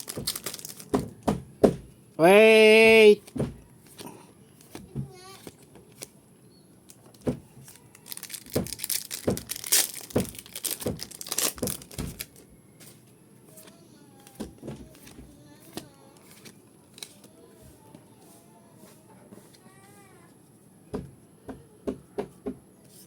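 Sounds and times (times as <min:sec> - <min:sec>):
packaging crinkling and tearing: 0:00.0 - 0:01.1, 0:06.9 - 0:12.5.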